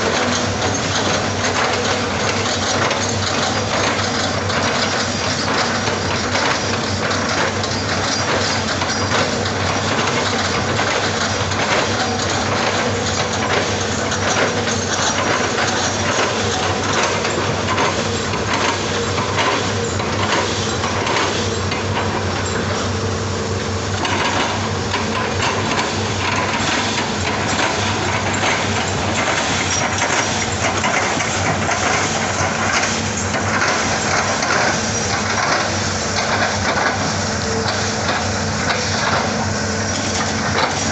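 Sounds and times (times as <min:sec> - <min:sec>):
excavator diesel engine running: 0:00.0 - 0:40.9.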